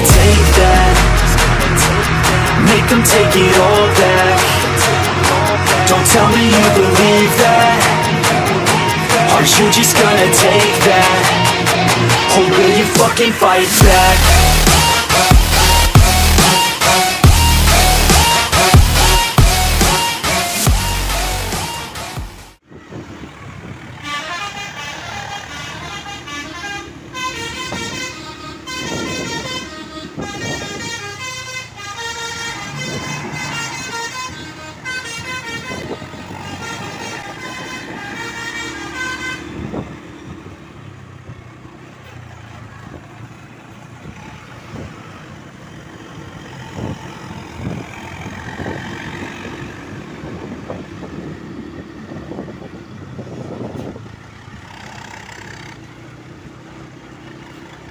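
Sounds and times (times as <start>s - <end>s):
passing bus noise: 0.0s - 57.9s
multi-tone air horn tune: 24.0s - 39.8s.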